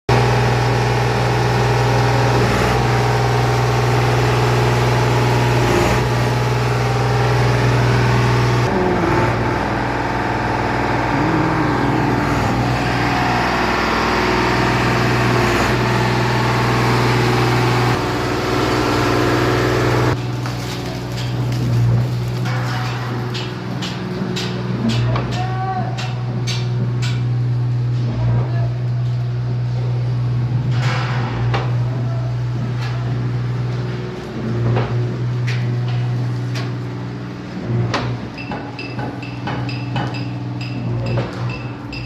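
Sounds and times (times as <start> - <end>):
engine running with low hum: 0.1 - 42.0.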